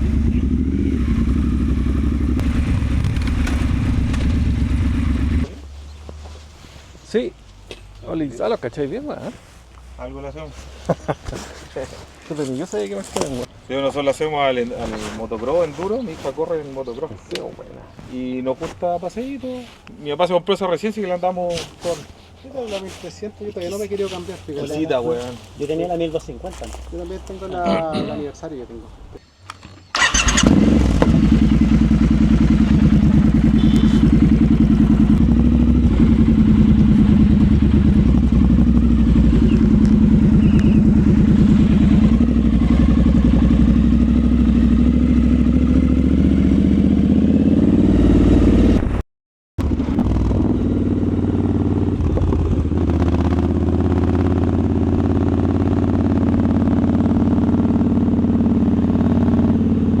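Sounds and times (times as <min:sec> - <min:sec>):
motorcycle engine running: 0:00.0 - 0:05.6, 0:30.0 - 0:48.9, 0:49.6 - 1:00.0.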